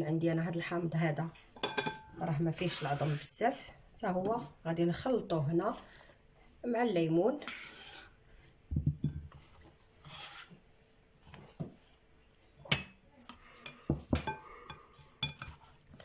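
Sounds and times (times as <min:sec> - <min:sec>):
dishes and utensils clinking: 0:01.6 - 0:02.4, 0:12.6 - 0:16.0.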